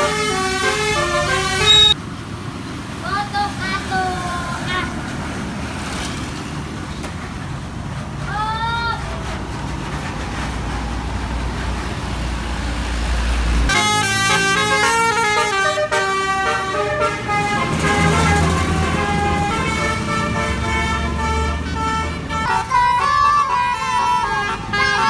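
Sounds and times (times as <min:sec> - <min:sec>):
musical air horn melody: 0:00.0 - 0:02.0, 0:13.7 - 0:25.0
bus engine running: 0:00.0 - 0:25.0.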